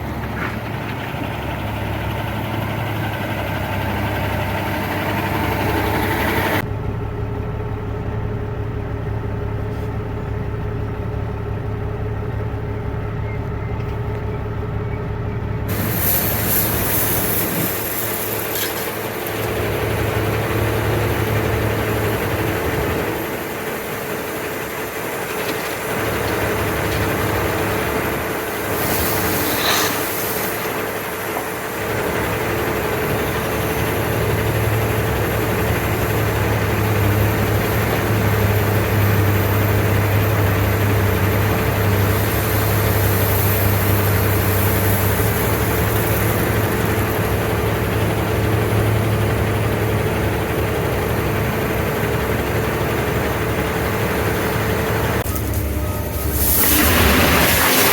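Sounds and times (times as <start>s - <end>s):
diesel engine idling: 0.0s - 57.9s
brief hiss: 28.7s - 30.8s, 55.3s - 57.9s.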